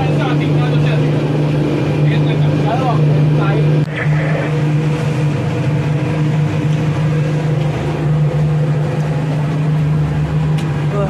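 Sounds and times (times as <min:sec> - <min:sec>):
boat engine running: 0:00.0 - 0:11.0
rushing noise: 0:03.6 - 0:10.5.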